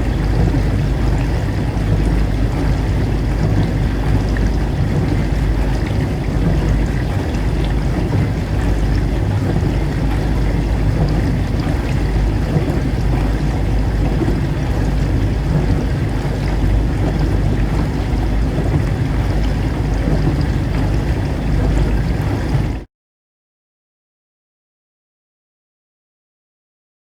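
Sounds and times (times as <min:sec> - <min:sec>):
dishwasher humming: 0:00.0 - 0:22.8
water spraying and sloshing: 0:00.0 - 0:22.9.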